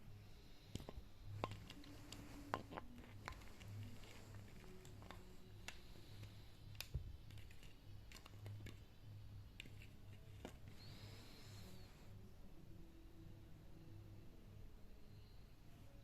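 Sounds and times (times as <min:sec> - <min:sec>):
faint sharp clicks and taps: 0:00.7 - 0:08.9, 0:09.5 - 0:10.9
faint high whistle-like tone: 0:10.7 - 0:12.3, 0:13.7 - 0:16.0.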